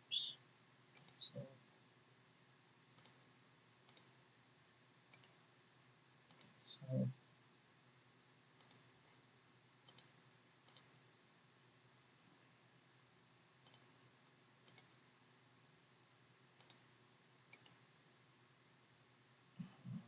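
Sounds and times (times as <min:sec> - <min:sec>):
computer mouse button clicking: 0:01.0 - 0:01.2, 0:09.9 - 0:10.1, 0:14.7 - 0:14.9, 0:16.6 - 0:16.8, 0:17.5 - 0:17.8.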